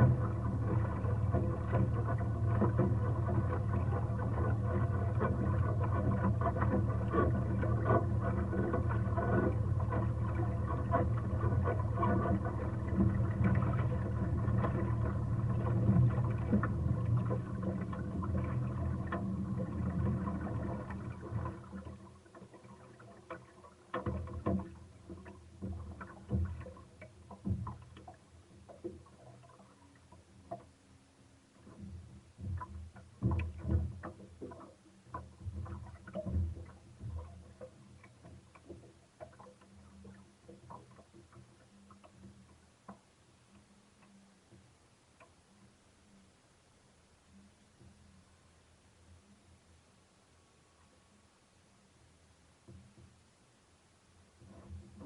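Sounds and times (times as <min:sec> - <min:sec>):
boat engine running: 0:00.0 - 0:30.7.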